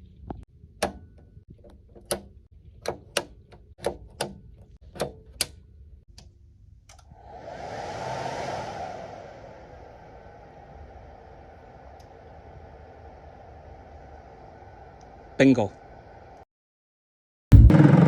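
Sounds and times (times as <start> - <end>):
whooshing noise: 7.1 - 13.9.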